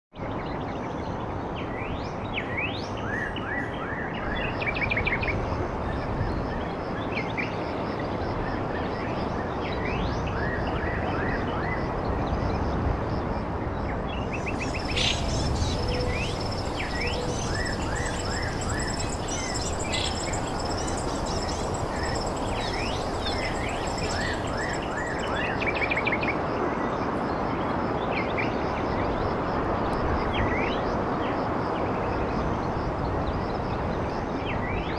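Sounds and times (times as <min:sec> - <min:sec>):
steady rushing background noise: 0:11.7 - 0:34.9
small birds chirping: 0:14.2 - 0:25.7.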